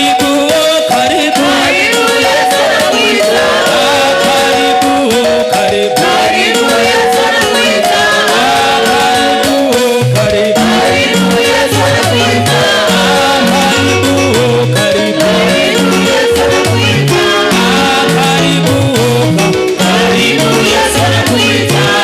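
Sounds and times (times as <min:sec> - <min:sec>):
gospel singing: 0:00.0 - 0:22.0
steady beat: 0:00.0 - 0:22.0
bass line: 0:09.9 - 0:22.0.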